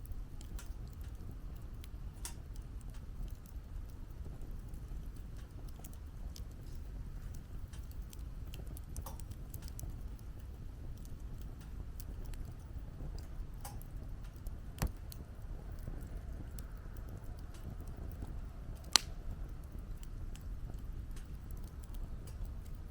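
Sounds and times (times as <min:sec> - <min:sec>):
wood fire crackling: 0:00.0 - 0:22.9.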